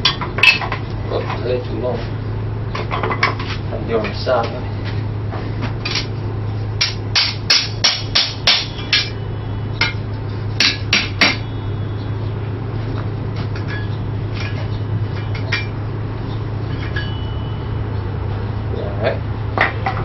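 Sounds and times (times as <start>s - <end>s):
steady low hum: 0.0s - 20.0s
hammer striking steel anvil: 6.8s - 9.2s, 10.6s - 11.4s.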